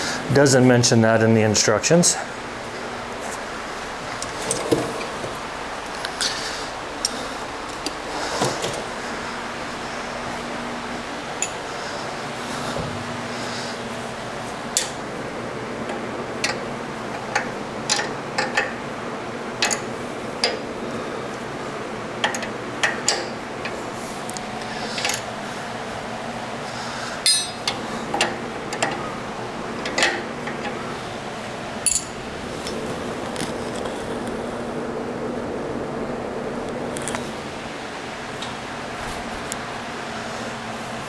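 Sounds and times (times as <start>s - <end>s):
background hum: 0.0s - 41.0s
metal hand tools clinking: 27.2s - 27.8s, 31.8s - 32.2s.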